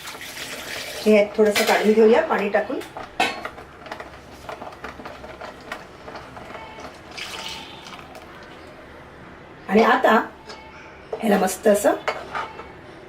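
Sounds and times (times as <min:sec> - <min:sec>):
water pouring into a pan: 0:00.0 - 0:01.2, 0:05.0 - 0:08.6.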